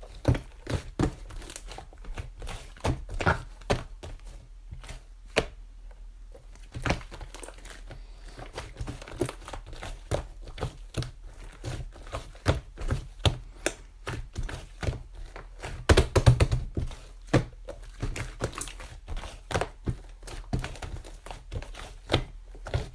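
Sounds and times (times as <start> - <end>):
crinkling: 0.0 - 22.9.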